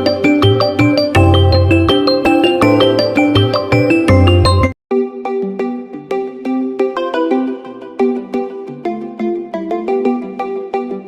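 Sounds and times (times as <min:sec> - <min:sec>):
phone ringtone melody: 0:00.0 - 0:04.8.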